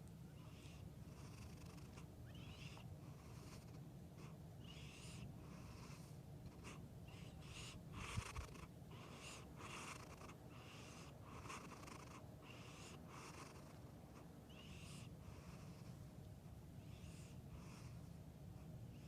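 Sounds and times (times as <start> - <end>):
faint low hum: 0.0 - 19.0
cat snoring softly: 0.4 - 16.1, 16.8 - 19.0.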